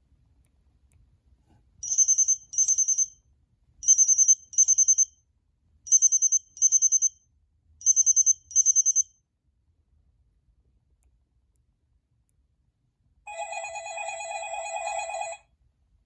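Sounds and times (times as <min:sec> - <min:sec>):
electronic double-ring ringtone: 0:13.3 - 0:15.4.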